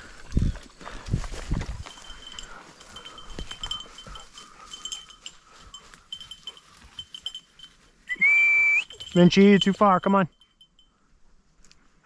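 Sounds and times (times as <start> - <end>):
dog collar bell jingling: 1.8 - 11.0.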